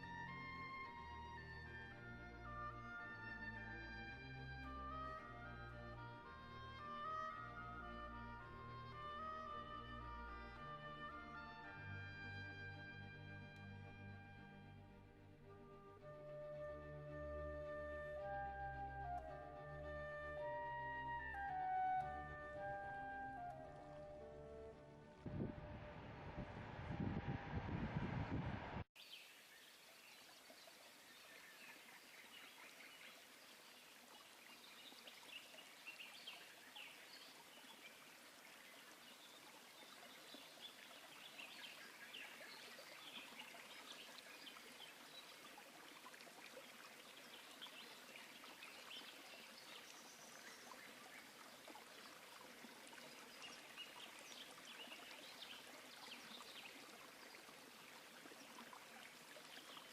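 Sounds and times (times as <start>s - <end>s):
music: 0.0s - 27.2s
running water rushing: 28.4s - 59.9s.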